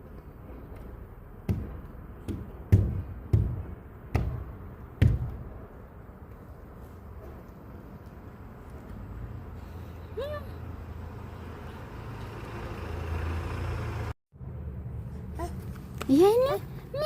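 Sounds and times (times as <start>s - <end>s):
dull thumps: 1.4s - 5.6s.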